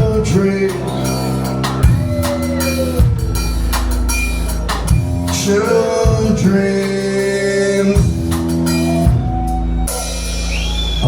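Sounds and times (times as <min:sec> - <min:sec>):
bass and keyboard notes: 0:00.0 - 0:11.0
drum hits: 0:01.4 - 0:06.7
person singing: 0:05.2 - 0:08.3.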